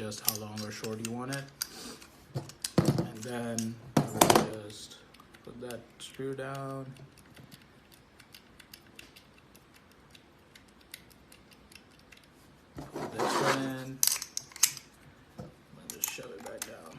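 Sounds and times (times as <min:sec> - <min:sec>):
metallic clicks and clatter: 0:14.0 - 0:14.9, 0:15.8 - 0:16.9.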